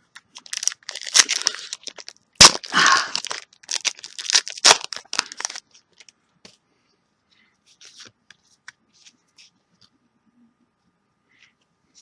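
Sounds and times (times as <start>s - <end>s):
wrapper tearing and crinkling: 0.3s - 6.1s.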